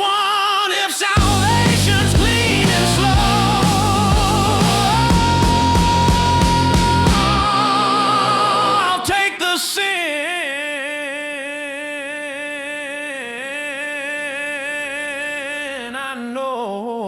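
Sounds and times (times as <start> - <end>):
rock band playing: 1.2 - 9.2.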